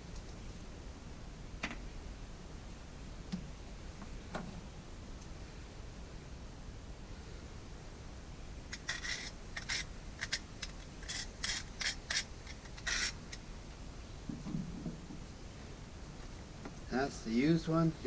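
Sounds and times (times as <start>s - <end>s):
scratchy scrapes and rubs: 8.7s - 13.4s.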